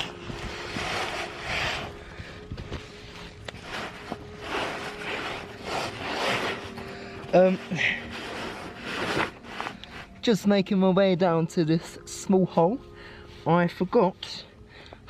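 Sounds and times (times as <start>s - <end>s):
rustling and scraping: 0.0s - 10.8s
faint steady hum: 0.0s - 15.0s.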